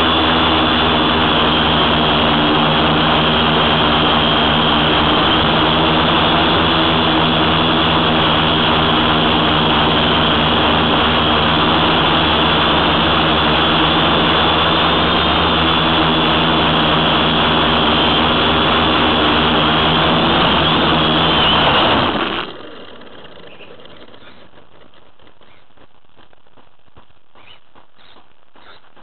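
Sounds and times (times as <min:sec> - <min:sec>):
drone motors whining: 0:00.0 - 0:26.5.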